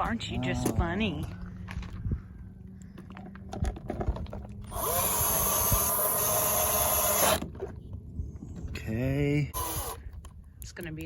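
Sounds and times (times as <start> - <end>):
cordless drill driving screw: 4.7 - 7.5, 9.6 - 10.0.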